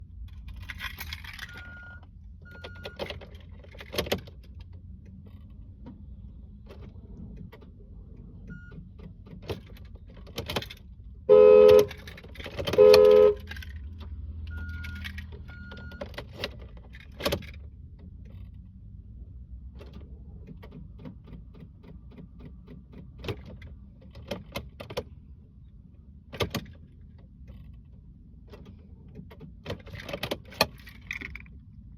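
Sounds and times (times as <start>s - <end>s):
clicks and rattles: 0.2s - 1.8s, 2.5s - 6.0s, 11.8s - 18.7s, 26.4s - 31.8s
car horn honks: 11.3s - 13.6s.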